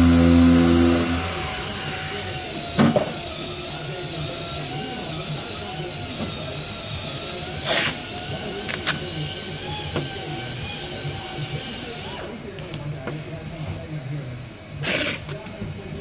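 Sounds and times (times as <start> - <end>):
steady low hum: 0.0 - 5.9.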